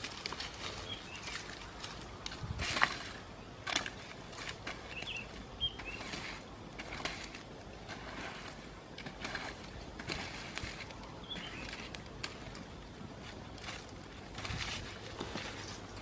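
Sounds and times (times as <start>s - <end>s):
sharp crackles and rustling clicks: 0.0s - 16.0s
small birds chirping: 0.4s - 2.2s, 4.6s - 6.5s, 10.9s - 12.8s, 15.1s - 16.0s.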